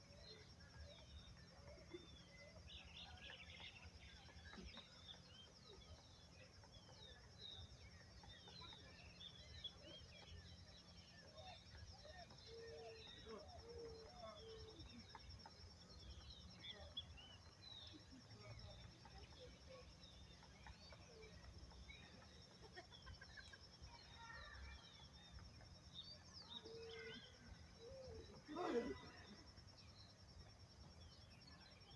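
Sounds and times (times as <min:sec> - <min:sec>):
birds chirping and twittering: 0:00.0 - 0:31.9.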